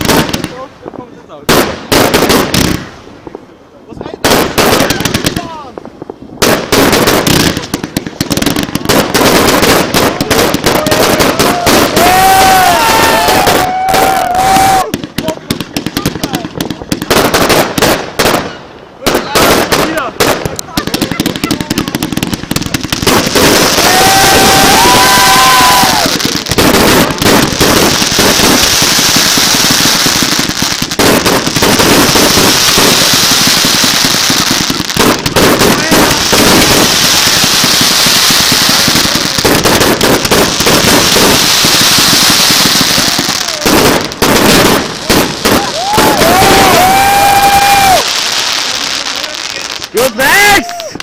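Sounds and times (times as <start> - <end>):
fireworks bangs and crackles: 0.0 - 51.0
firework whistles: 22.6 - 35.2, 45.4 - 48.8.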